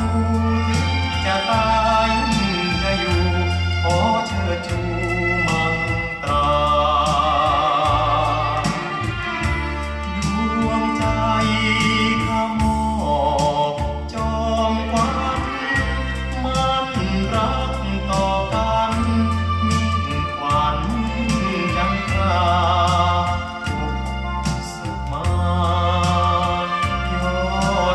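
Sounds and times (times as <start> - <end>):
band music from vinyl record: 0.0 - 27.9.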